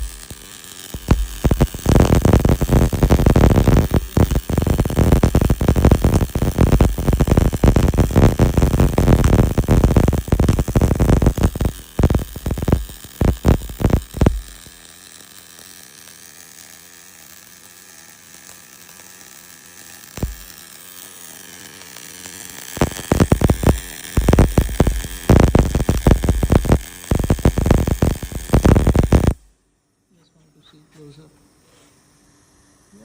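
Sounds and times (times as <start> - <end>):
low hiss: 0.0 - 15.4, 21.8 - 29.5
welding arc crackle: 0.0 - 29.5.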